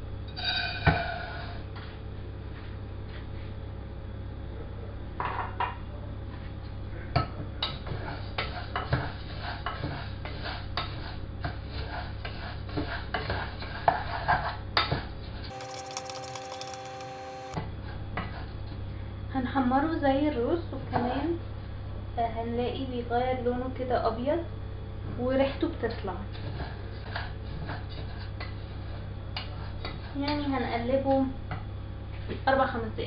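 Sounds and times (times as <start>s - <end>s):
rice frying in oil: 15.5s - 17.6s
spoon scraping a pot: 15.5s - 17.6s.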